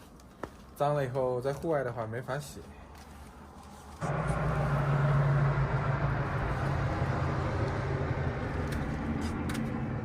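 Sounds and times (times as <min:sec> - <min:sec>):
road noise: 0:00.0 - 0:10.0
vehicle engine hum: 0:03.3 - 0:10.0.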